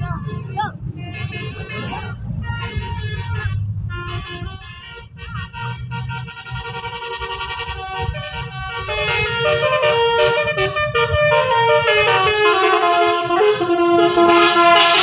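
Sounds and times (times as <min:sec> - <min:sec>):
bus engine rumble: 0:00.0 - 0:15.0
musical bus air horn: 0:01.1 - 0:15.0.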